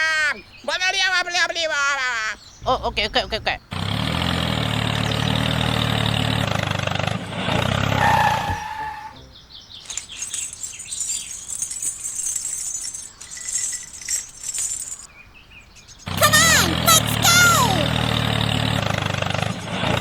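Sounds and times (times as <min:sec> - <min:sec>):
small engine humming: 0:03.7 - 0:08.0.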